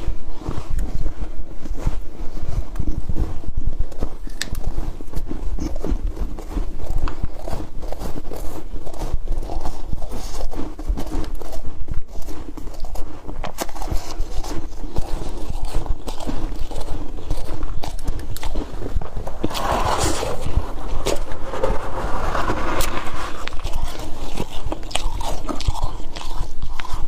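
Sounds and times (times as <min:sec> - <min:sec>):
chewing frost crunching: 0:00.0 - 0:21.8, 0:22.8 - 0:27.0
low rumble: 0:18.9 - 0:25.6.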